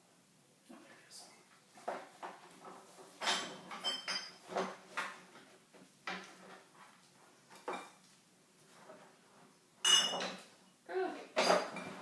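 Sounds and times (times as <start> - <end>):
utensils knocking and clinking: 9.8 - 10.4, 11.4 - 12.0.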